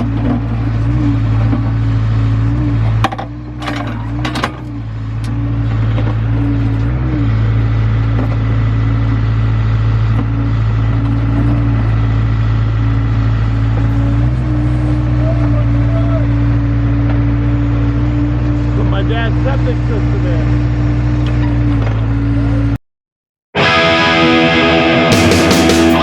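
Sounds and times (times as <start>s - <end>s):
digging machine engine running: 0.0s - 22.8s
metal clanks: 2.9s - 7.0s.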